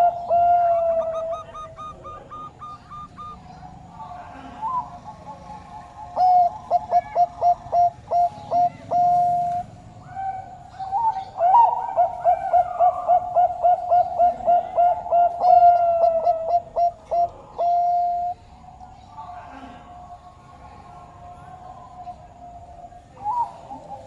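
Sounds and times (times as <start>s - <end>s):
turtledove cooing: 0.0s - 18.4s.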